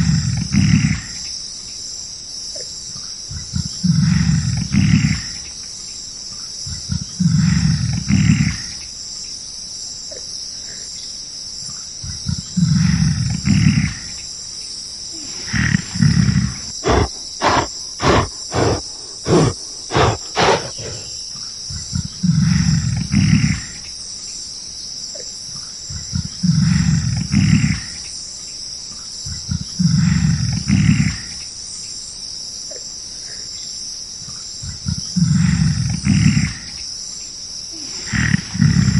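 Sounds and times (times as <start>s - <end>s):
insects buzzing: 0.0s - 38.9s
deep roar-like animal calls: 15.2s - 21.2s
short animal grunts: 15.2s - 21.2s, 37.8s - 38.9s.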